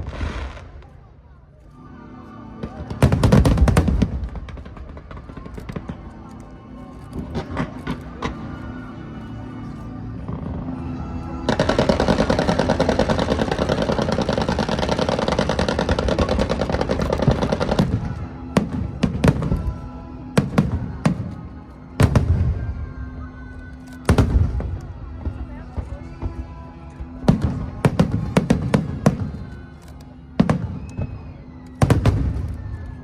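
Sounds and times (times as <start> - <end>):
fireworks loud bangs: 0.0 - 1.0, 11.5 - 19.7, 31.8 - 32.8
fireworks crackling: 0.0 - 1.3, 2.7 - 8.6, 10.1 - 23.0, 23.8 - 33.0.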